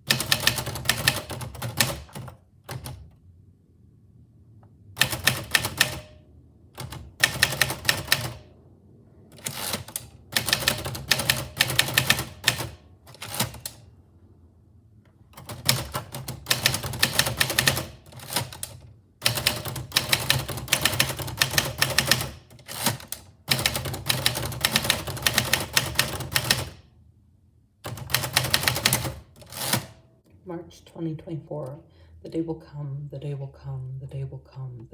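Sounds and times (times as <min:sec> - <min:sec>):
typewriter keys striking: 0:00.1 - 0:03.0, 0:05.0 - 0:06.2, 0:09.4 - 0:13.8, 0:15.4 - 0:26.8, 0:27.9 - 0:30.0.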